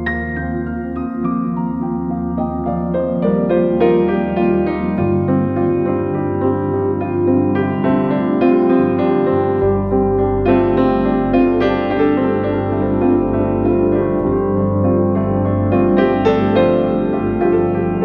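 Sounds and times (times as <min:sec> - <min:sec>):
soft slow piano music: 0:00.0 - 0:18.0.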